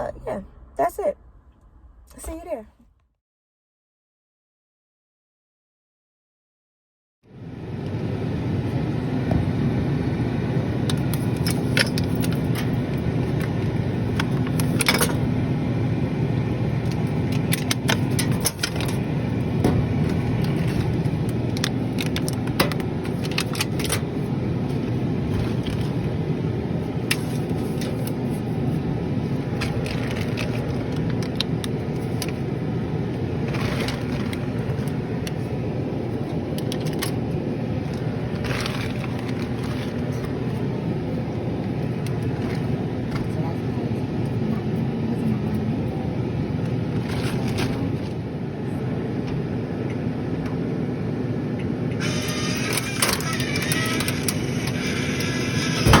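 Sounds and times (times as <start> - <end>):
refrigeration unit humming: 7.2 - 56.0
clicks and clatters of handling: 29.6 - 32.4.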